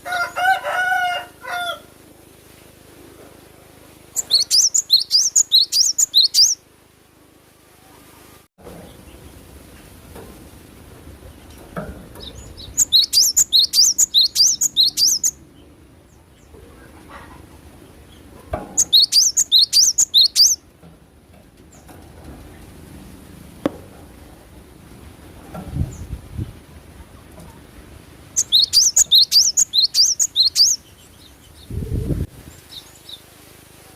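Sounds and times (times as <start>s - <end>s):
bird singing rapid high notes: 4.1s - 6.6s, 12.2s - 15.7s, 18.8s - 20.6s, 28.3s - 31.8s.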